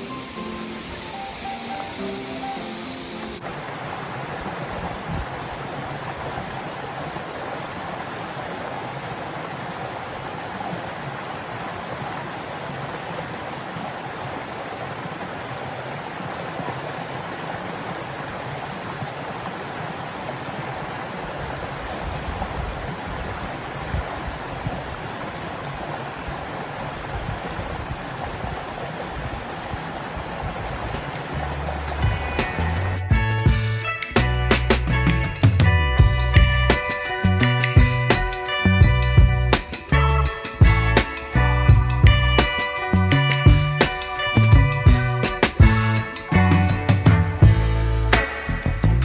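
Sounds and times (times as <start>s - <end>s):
waterfall rushing: 0.0s - 48.7s
low rumbling: 30.6s - 49.0s.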